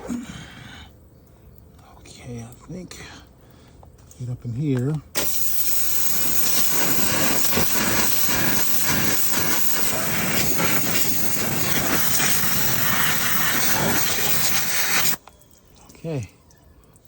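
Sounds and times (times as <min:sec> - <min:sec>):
water spraying from nozzle: 0:05.2 - 0:15.2.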